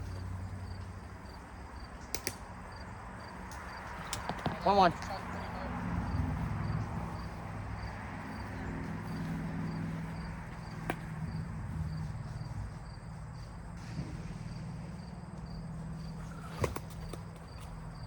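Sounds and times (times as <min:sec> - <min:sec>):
cricket chirping: 0:00.0 - 0:18.0
low outdoor hum: 0:00.0 - 0:18.0
sharp crack: 0:02.1 - 0:02.8, 0:03.5 - 0:04.8, 0:13.8 - 0:15.6.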